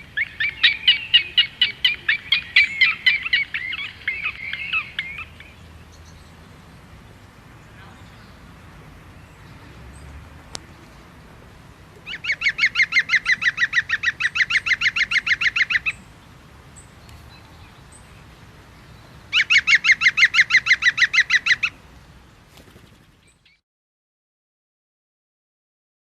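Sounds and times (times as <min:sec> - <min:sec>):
bird calling rapid repeated notes: 0:00.0 - 0:05.6, 0:12.0 - 0:16.0, 0:19.3 - 0:21.8.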